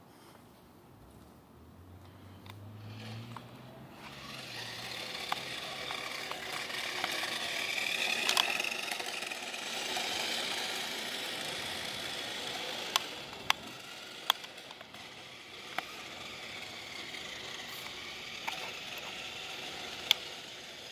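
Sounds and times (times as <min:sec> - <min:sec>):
toy car electric motor whining: 0:02.7 - 0:20.9
sharp clicks: 0:04.9 - 0:09.2, 0:12.8 - 0:15.1.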